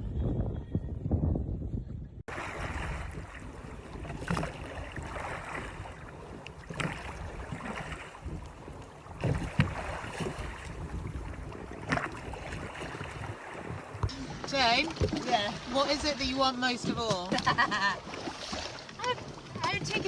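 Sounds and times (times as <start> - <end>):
wind: 0.0 - 20.0
sharp splash: 2.3 - 8.3, 9.2 - 10.8, 17.1 - 19.0
water rushing around boat: 2.3 - 20.0.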